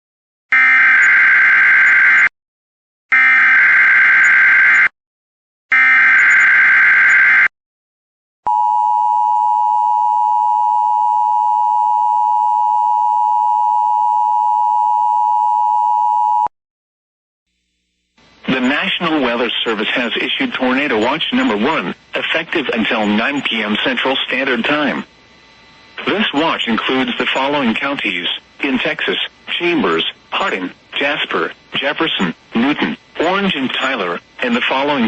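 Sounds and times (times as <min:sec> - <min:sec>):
steady attention signal tone: 0:08.5 - 0:16.5.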